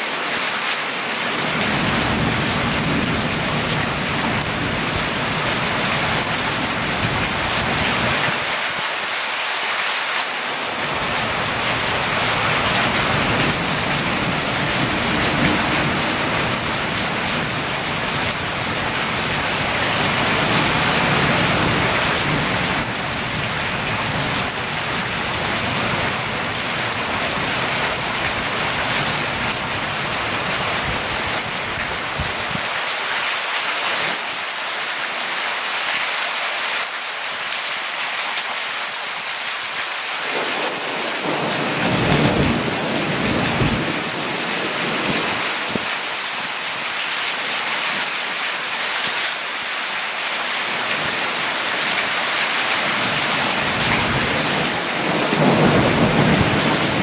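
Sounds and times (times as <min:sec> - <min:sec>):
heavy rain pouring: 0:00.0 - 0:57.0
thunder rumbling: 0:10.8 - 0:32.6, 0:40.2 - 0:45.9, 0:52.9 - 0:57.0.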